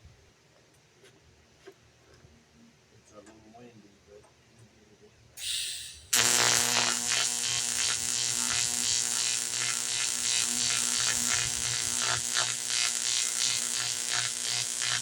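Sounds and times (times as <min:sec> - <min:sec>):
short hiss: 0:05.4 - 0:06.2
welding arc buzz with crackle: 0:05.4 - 0:15.0.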